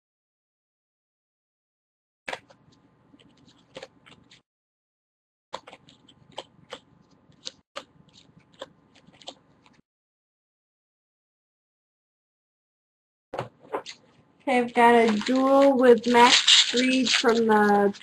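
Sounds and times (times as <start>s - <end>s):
cards clicking and rustling: 15.0s - 18.0s.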